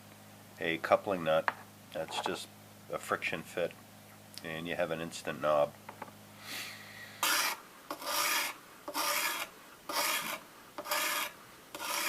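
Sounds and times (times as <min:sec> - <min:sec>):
knife scraping on whetstone: 0:07.2 - 0:12.0.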